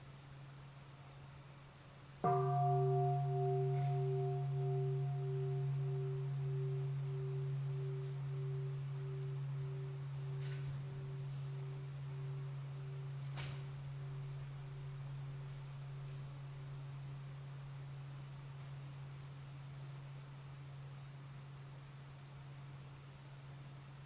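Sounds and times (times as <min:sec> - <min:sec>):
steady low hum: 0:00.0 - 0:24.0
bell ringing: 0:02.3 - 0:13.3.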